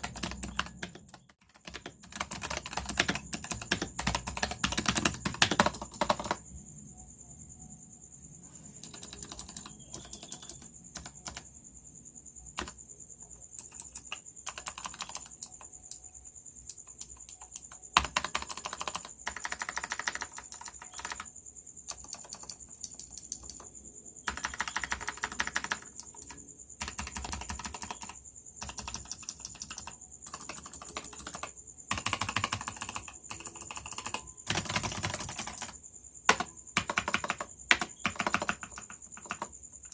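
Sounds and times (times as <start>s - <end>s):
clicky keyboard typing: 0.0s - 6.4s, 8.8s - 11.5s, 12.5s - 39.9s.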